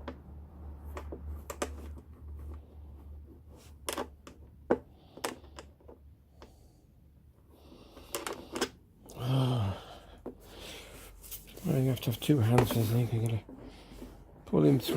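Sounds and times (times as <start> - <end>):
small parts clicking and knocking: 0.0 - 6.6, 7.7 - 9.2
person grunting: 9.1 - 10.1.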